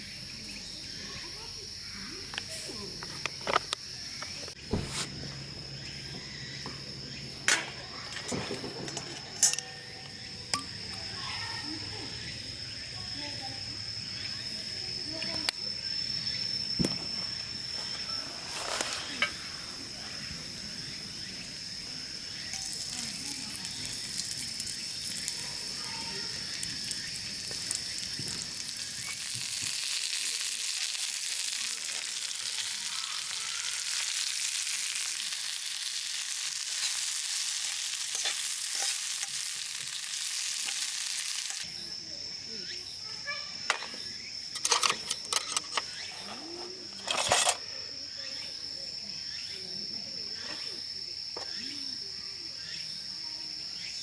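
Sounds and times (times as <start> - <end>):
food sizzling in hot oil: 22.2 - 41.8.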